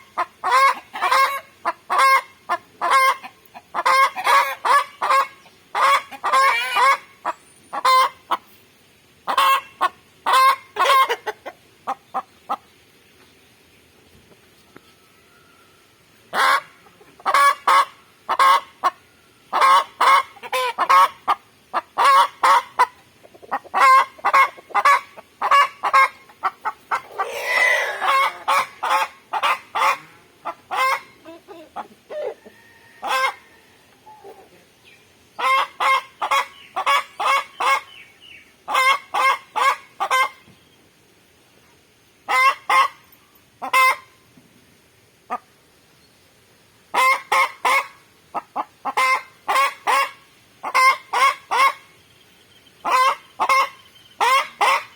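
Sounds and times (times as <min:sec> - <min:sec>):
chickens clucking: 0:00.0 - 0:08.6, 0:09.2 - 0:13.3, 0:14.1 - 0:40.6, 0:42.3 - 0:44.2, 0:45.3 - 0:45.5, 0:46.9 - 0:52.0, 0:52.8 - 0:54.9
chicken squawking: 0:00.2 - 0:08.2, 0:09.3 - 0:12.6, 0:16.3 - 0:34.6, 0:35.4 - 0:37.9, 0:38.7 - 0:40.4, 0:42.3 - 0:43.0, 0:43.6 - 0:44.0, 0:46.9 - 0:51.8, 0:52.8 - 0:54.9.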